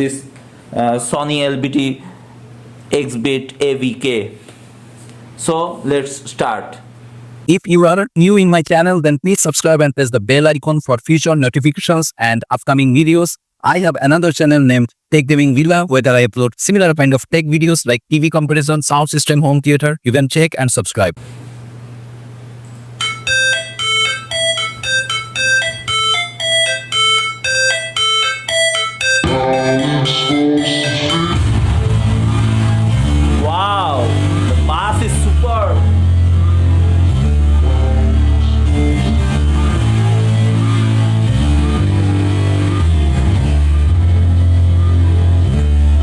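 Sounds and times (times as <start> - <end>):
keyboard melody of quick notes: 23.0 - 35.1
band with heavy bass and guitar: 29.0 - 46.0
loud rock music: 29.2 - 46.0.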